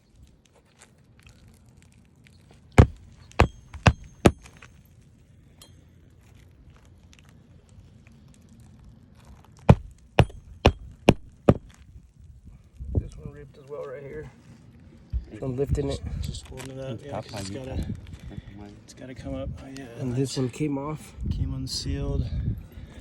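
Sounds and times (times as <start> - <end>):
hammer knocks on shingle roof: 2.8 - 4.5, 9.7 - 11.7.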